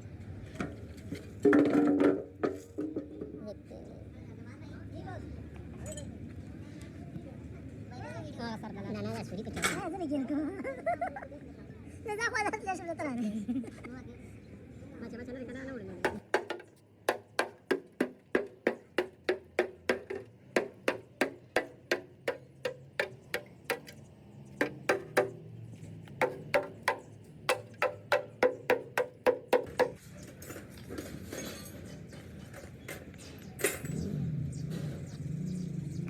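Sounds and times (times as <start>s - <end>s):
hammer striking metal: 16.1s - 24.0s, 24.6s - 30.0s.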